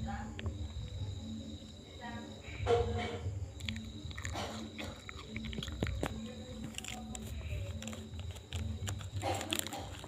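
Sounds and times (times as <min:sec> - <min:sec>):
soft clicks and squishing: 0:03.6 - 0:10.0.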